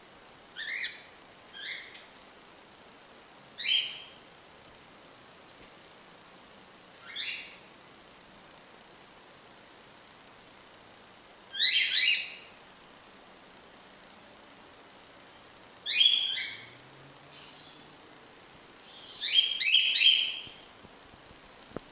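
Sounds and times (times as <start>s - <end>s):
cockatiel chirping: 0.6s - 2.0s, 3.6s - 4.1s, 7.0s - 7.6s, 11.5s - 12.5s, 15.9s - 16.7s, 18.8s - 20.6s.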